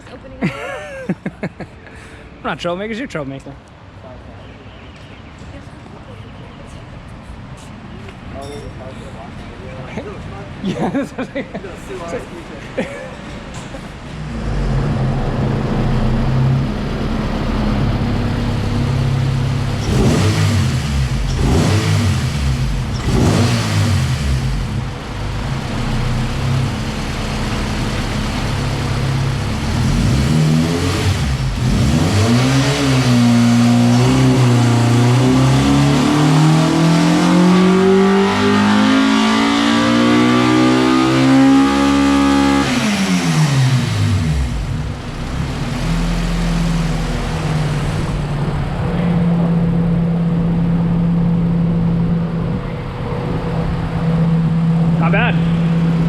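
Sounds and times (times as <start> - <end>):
car engine revving on dyno: 14.2 - 56.0.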